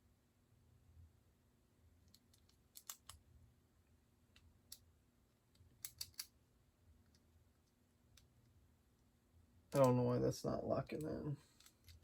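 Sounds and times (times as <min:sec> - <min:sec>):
plastic bricks clicking together: 0:02.1 - 0:03.2, 0:05.8 - 0:06.3.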